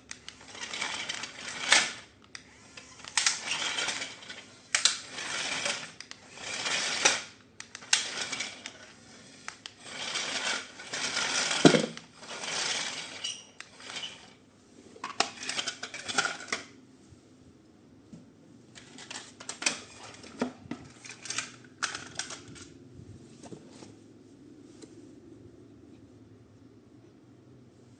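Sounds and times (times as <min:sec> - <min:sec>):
toy parts clicking: 0:00.1 - 0:08.8.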